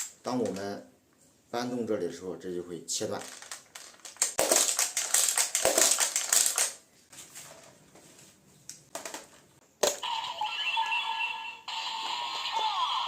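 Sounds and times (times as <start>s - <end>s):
plastic toy belt clicking: 3.2s - 6.8s.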